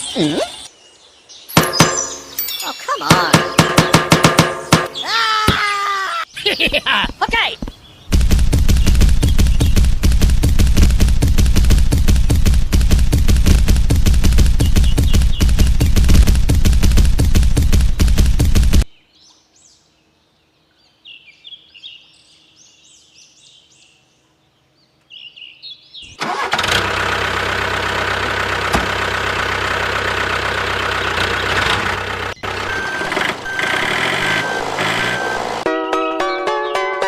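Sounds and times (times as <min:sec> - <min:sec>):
bird chirps: 0:00.0 - 0:05.5, 0:06.1 - 0:10.0, 0:14.4 - 0:16.2
engine running: 0:08.1 - 0:18.9, 0:26.2 - 0:35.7.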